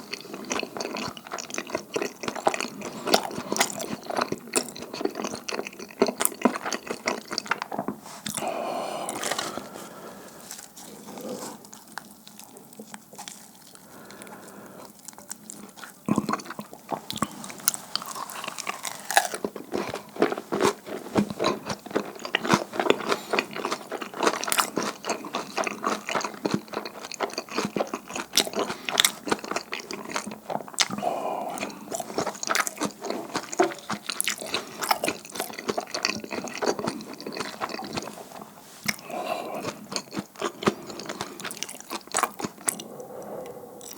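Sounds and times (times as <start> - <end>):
wet chewing mouth sounds: 0.0 - 43.9
crunchy bites: 8.3 - 9.7, 15.0 - 20.8.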